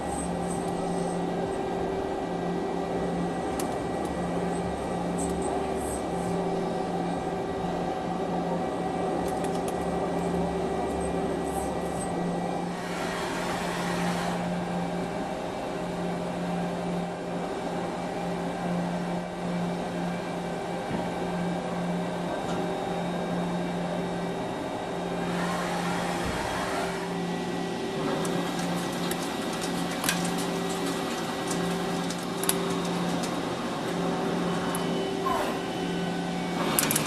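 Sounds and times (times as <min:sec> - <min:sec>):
machine humming: 0:22.8 - 0:37.0.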